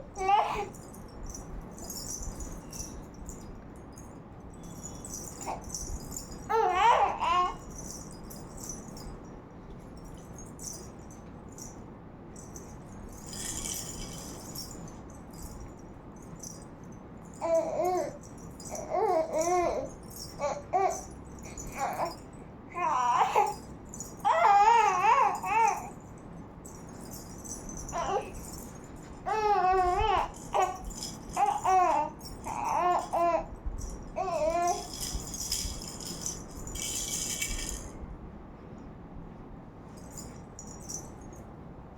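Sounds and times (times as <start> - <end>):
toy rattle shaken: 0.1 - 11.8, 12.4 - 38.0, 40.0 - 41.4
baby babbling and squealing: 0.2 - 0.7, 6.5 - 7.6, 17.4 - 18.2, 18.8 - 21.1, 21.7 - 23.6, 24.2 - 25.9, 27.9 - 28.4, 29.3 - 33.5, 34.2 - 34.9.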